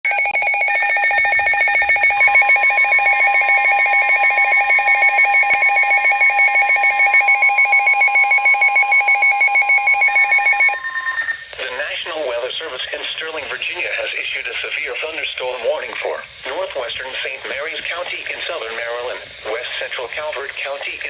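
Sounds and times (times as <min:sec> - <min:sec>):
electronic alarm trilling: 0:00.0 - 0:16.2.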